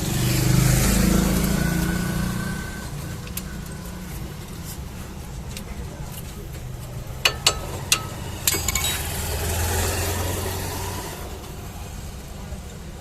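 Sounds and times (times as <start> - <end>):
car engine humming: 0.0 - 13.0.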